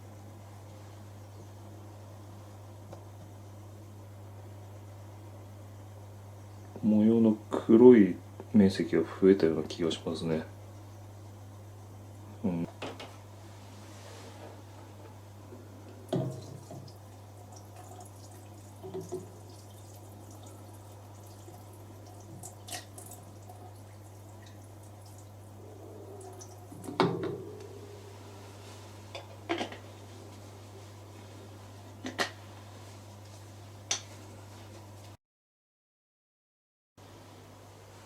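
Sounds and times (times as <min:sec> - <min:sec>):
wet dripping sounds: 0:16.1 - 0:25.5
low hum: 0:23.6 - 0:31.8.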